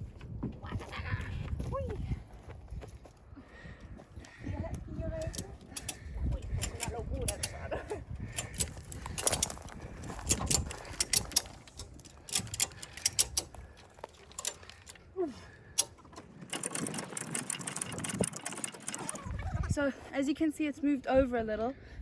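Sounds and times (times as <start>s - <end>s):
ratchet strap pawl clicking: 5.2s - 7.6s, 8.2s - 15.0s, 15.7s - 19.4s.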